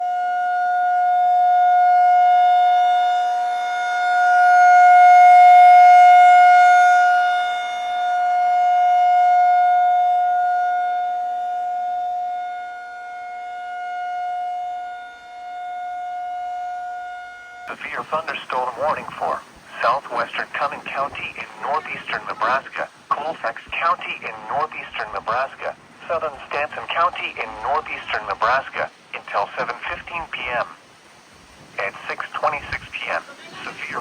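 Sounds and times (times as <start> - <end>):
tornado warning siren: 0.0 - 34.0.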